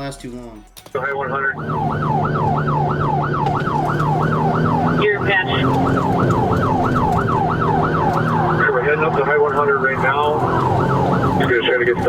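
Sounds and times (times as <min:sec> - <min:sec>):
police siren yelping: 0:01.0 - 0:12.0.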